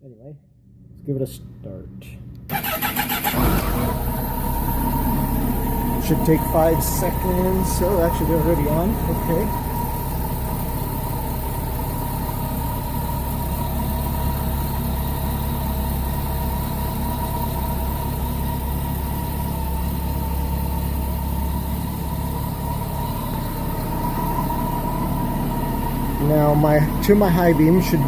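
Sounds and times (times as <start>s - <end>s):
motorcycle engine idling: 2.6s - 28.0s
high whine: 3.9s - 14.4s, 21.4s - 28.0s.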